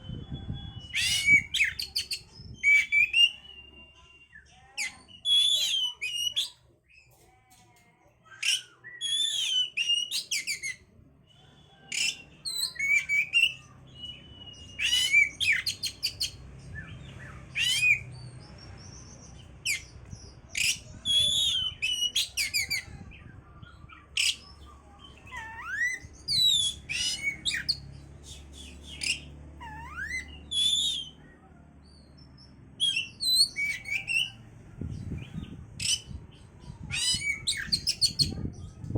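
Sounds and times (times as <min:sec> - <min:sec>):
bird singing chirps and trills: 0:00.0 - 0:07.1, 0:08.2 - 0:38.9.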